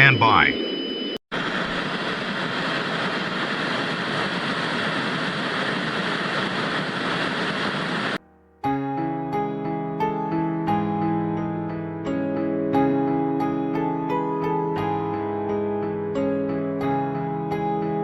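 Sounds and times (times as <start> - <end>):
radio static hiss: 0.0 - 0.6, 1.4 - 8.2
slow piano music: 8.2 - 18.0.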